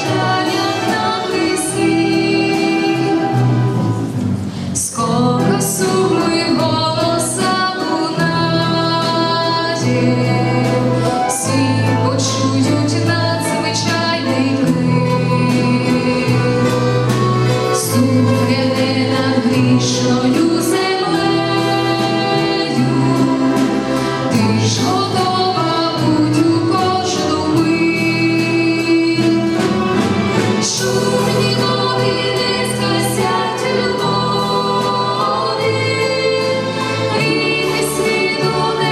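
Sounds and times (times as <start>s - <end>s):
choir singing a gospel hymn: 0.0s - 4.0s, 14.3s - 28.5s, 30.3s - 38.9s
orchestral accompaniment: 0.0s - 38.9s.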